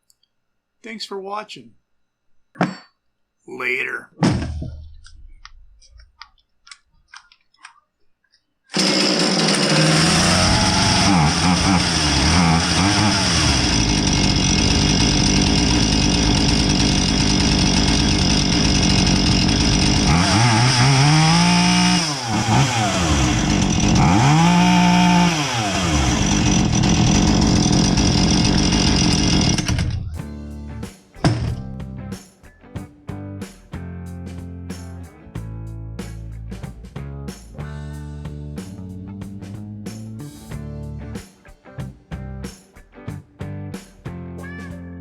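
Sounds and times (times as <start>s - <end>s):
chainsaw running and revving: 8.7s - 30.1s.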